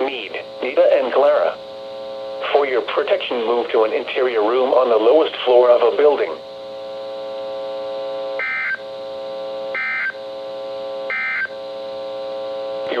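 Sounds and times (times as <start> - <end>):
low electronic buzz: 0.0 - 13.0
digital data screech bursts: 8.4 - 8.8, 9.8 - 10.2.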